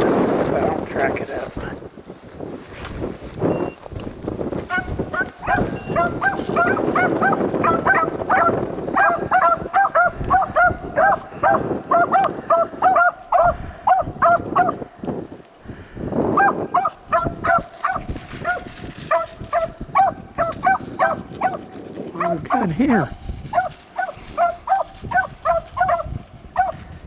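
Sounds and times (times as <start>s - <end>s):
wind rumble on microphone: 0.0s - 27.0s
dogs baying and yelping: 4.6s - 14.9s, 16.4s - 22.6s, 23.5s - 26.8s.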